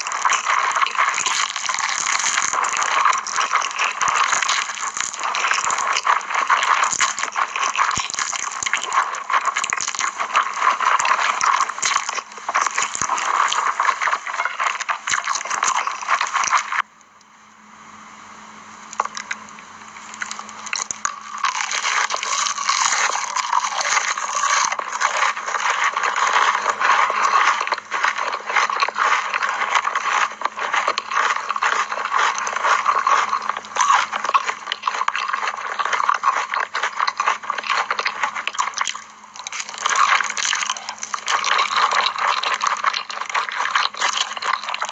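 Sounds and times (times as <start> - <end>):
scraping and crackling: 0.0 - 16.8, 18.9 - 44.9.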